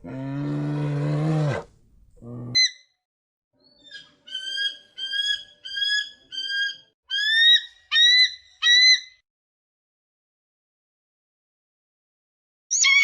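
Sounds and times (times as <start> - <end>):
animal high calls: 12.7 - 13.0.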